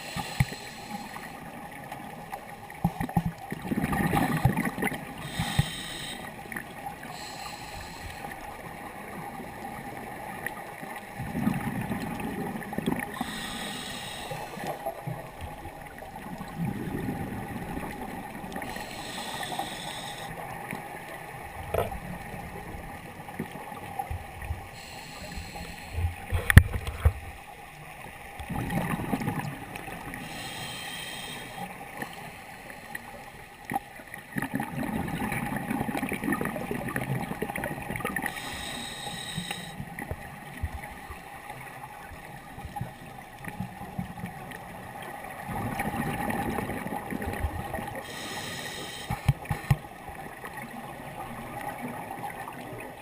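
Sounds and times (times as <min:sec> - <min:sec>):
regulator inhale hiss: 0:00.0 - 0:01.5, 0:05.2 - 0:08.5, 0:13.1 - 0:15.1, 0:18.5 - 0:20.4, 0:24.7 - 0:26.5, 0:30.1 - 0:33.4, 0:38.2 - 0:40.0, 0:48.0 - 0:49.8
exhaled bubbles gurgling: 0:02.9 - 0:27.2, 0:28.4 - 0:32.1, 0:34.4 - 0:40.9, 0:43.6 - 0:53.0.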